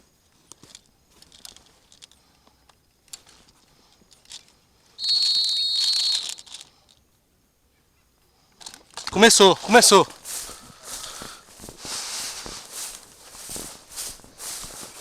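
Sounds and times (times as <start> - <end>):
faint rustles: 0.0 - 7.2, 8.2 - 15.0
whistle blown: 5.0 - 6.4.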